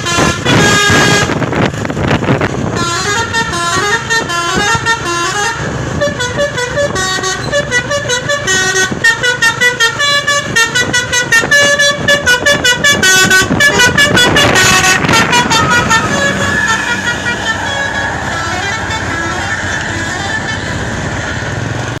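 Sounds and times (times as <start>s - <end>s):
multi-tone bus horn melody: 0.0s - 22.0s
noisy rush: 10.4s - 22.0s.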